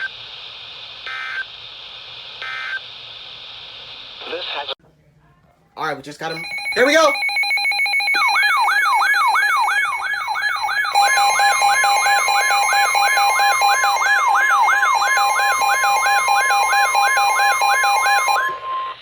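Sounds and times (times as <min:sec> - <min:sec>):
steady warning alarm tone: 0:06.2 - 0:19.0
weather alert siren whoop: 0:06.3 - 0:18.8.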